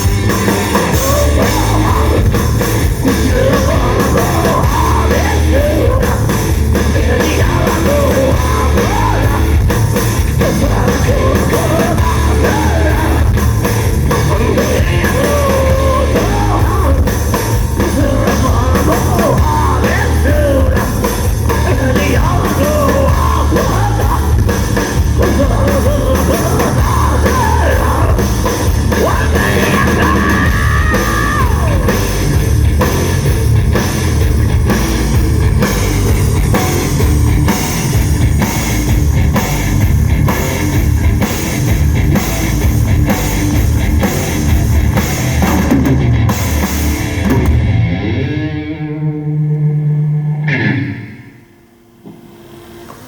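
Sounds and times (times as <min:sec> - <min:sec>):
drum kit: 0:00.0 - 0:48.2
distorted electric guitars: 0:00.0 - 0:53.0
person singing: 0:00.7 - 0:09.7, 0:10.3 - 0:13.4, 0:14.1 - 0:24.5, 0:25.1 - 0:32.2.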